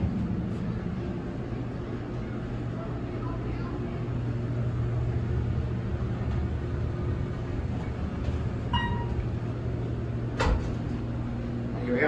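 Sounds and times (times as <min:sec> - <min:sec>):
elevator low hum: 0:00.0 - 0:12.0
elevator arrival clunk: 0:05.9 - 0:11.6
elevator chime: 0:08.6 - 0:09.5.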